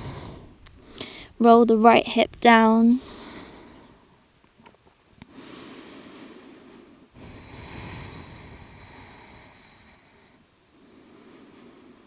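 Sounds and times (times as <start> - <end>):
person breathing slowly: 0.0 - 1.4, 5.3 - 12.0.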